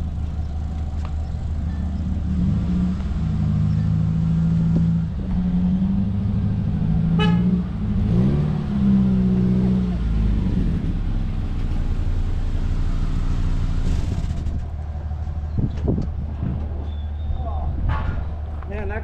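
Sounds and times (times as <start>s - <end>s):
vehicle engine running: 0.0s - 19.0s
short high horn toot: 7.2s - 7.6s.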